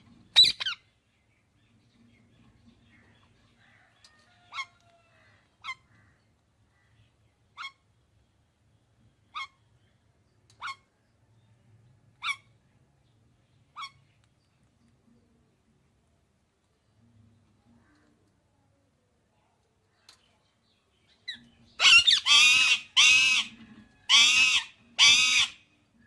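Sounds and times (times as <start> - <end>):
parrot squawking: 0.4 - 0.8, 21.8 - 23.5, 24.1 - 25.6
parrot chatter: 21.8 - 25.6.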